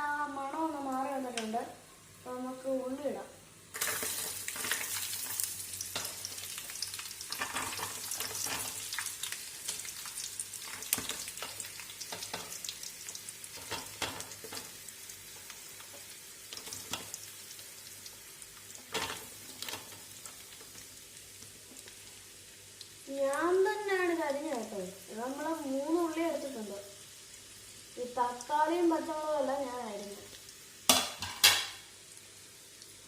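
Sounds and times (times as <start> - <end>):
onions sizzling in a pan: 0.0 - 33.0
spoon stirring and knocking pan: 7.3 - 9.1, 10.6 - 12.7, 13.5 - 17.2, 18.8 - 20.8, 30.9 - 31.8.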